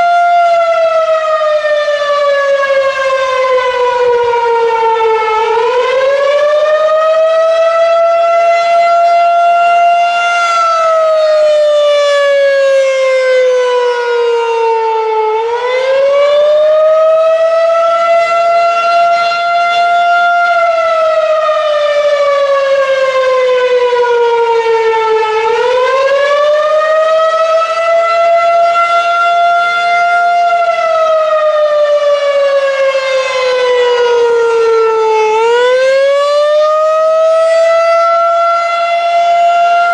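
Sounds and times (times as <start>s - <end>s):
rising and falling warning siren: 0.0s - 39.9s.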